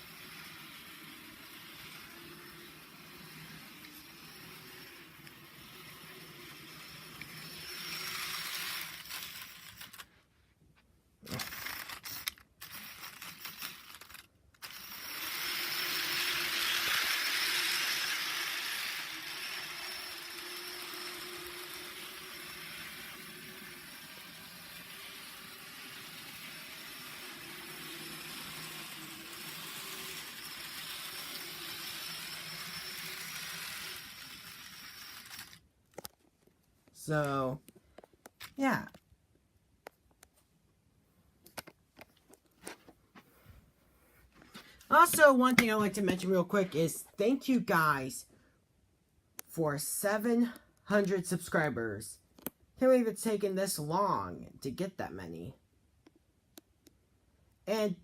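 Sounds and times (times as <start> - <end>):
model train motor whirring: 0.0 - 10.1, 11.3 - 36.1.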